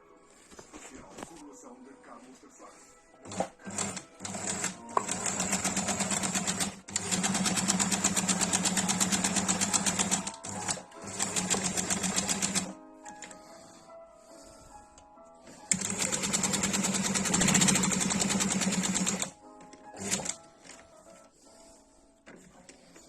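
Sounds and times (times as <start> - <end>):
sewing machine stitching: 3.2 - 12.7, 15.6 - 19.3, 19.9 - 20.4.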